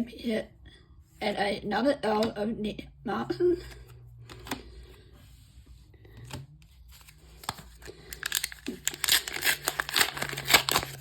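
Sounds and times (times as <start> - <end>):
wrapper tearing and crinkling: 7.0 - 11.0.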